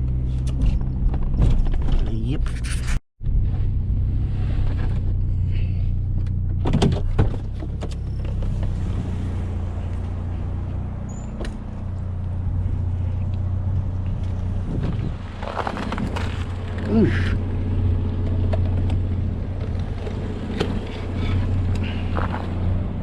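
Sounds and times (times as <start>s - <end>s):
pickup truck engine and road noise: 0.0s - 23.0s.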